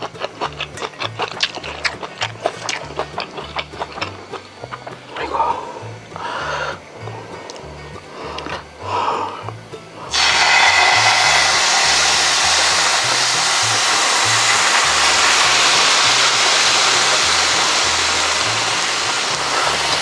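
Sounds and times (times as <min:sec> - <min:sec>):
background music with bass line: 0:00.0 - 0:20.0
loud rushing hiss: 0:10.1 - 0:20.0.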